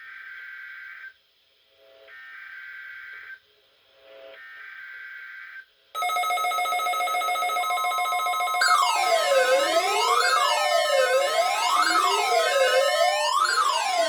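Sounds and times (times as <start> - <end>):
radio alert alarm beeping: 6.0 - 14.0
shrill data tones: 6.0 - 14.0.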